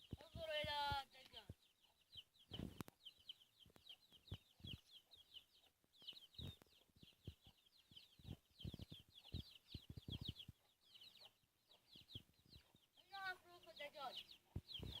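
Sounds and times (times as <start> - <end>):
chicks peeping: 0.0 - 15.0
soft low thumps: 6.1 - 10.7.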